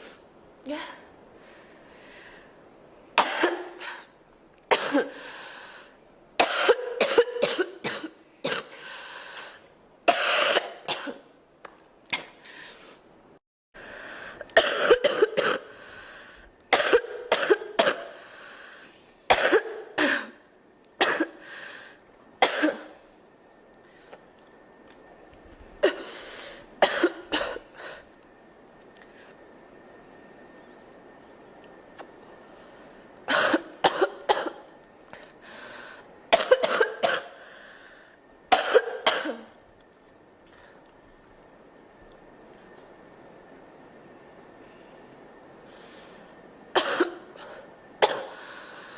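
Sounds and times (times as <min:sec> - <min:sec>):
breathing: 0:01.4 - 0:02.6, 0:05.1 - 0:06.0, 0:08.7 - 0:09.7, 0:12.4 - 0:13.1, 0:13.8 - 0:14.5, 0:15.7 - 0:16.5, 0:18.2 - 0:19.0, 0:21.4 - 0:22.0, 0:26.0 - 0:26.6, 0:35.1 - 0:36.1, 0:37.4 - 0:38.2, 0:40.5 - 0:40.9, 0:44.6 - 0:46.3, 0:48.3 - 0:48.9
girl coughing: 0:03.2 - 0:04.1, 0:04.7 - 0:05.1, 0:06.4 - 0:08.8, 0:10.1 - 0:11.2, 0:14.6 - 0:15.7, 0:16.7 - 0:18.1, 0:19.3 - 0:20.4, 0:22.4 - 0:22.9, 0:26.8 - 0:27.6, 0:33.3 - 0:34.6, 0:36.4 - 0:37.4, 0:38.5 - 0:39.6, 0:46.8 - 0:47.3, 0:48.0 - 0:48.4.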